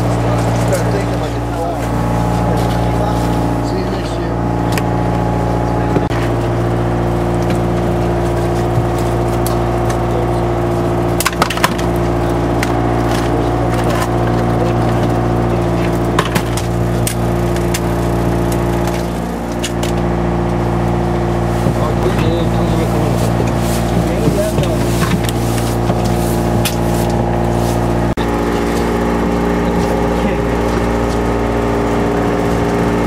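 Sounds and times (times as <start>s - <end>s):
boat engine droning: 0.0s - 33.0s
sharp knocks and clicks: 11.2s - 12.0s.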